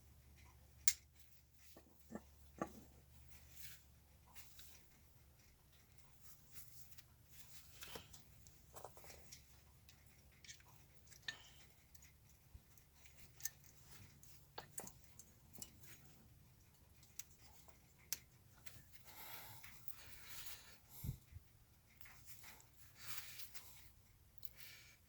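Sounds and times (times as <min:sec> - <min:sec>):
low steady hum: 0:00.0 - 0:25.0
small parts and tools clicking: 0:00.4 - 0:01.8, 0:06.9 - 0:18.9.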